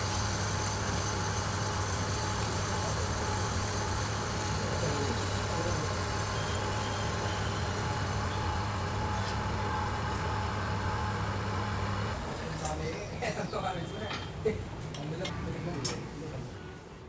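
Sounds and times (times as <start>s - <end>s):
lathe running: 0.0s - 12.7s.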